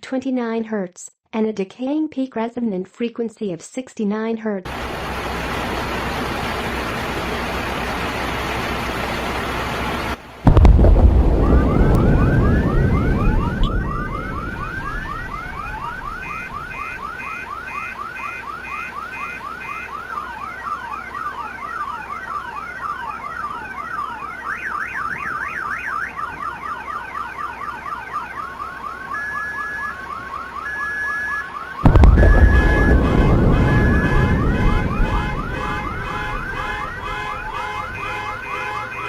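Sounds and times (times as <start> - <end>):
loud low rumble: 10.5 - 16.8, 31.8 - 38.0
alarm sirens whooping: 10.5 - 39.0.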